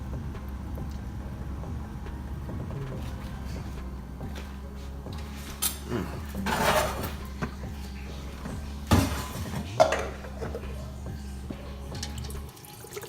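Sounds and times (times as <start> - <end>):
cookware clattering: 5.3 - 11.0.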